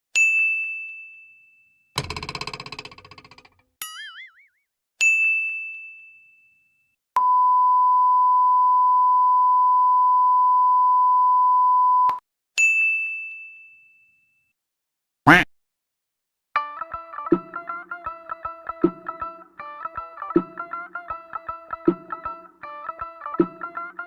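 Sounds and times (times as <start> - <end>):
censor bleep: 7.2 - 12.2.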